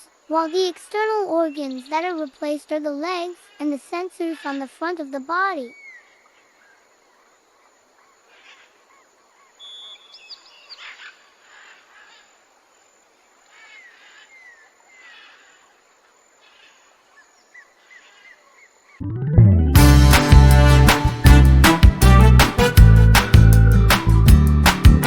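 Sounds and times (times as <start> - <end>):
faint bird chirps: 0.0 - 19.0
loud music: 19.0 - 25.0.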